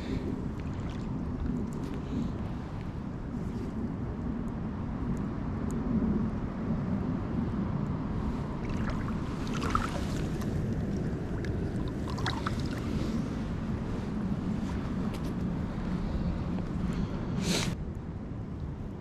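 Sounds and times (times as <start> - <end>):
river water rushing: 8.5 - 12.9.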